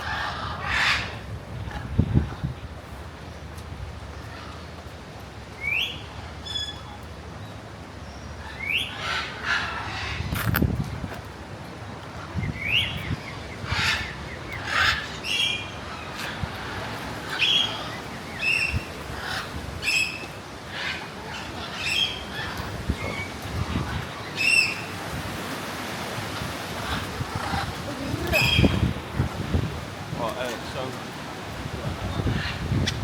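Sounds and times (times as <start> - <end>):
parrots squawking: 0.0 - 2.4, 8.5 - 10.4, 13.7 - 24.8, 26.7 - 29.3, 32.1 - 33.0.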